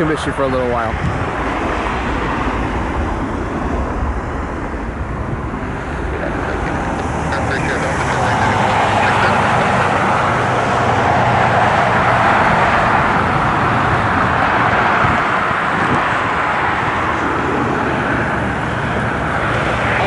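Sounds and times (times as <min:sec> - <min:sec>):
jet engines rushing: 0:00.0 - 0:20.0.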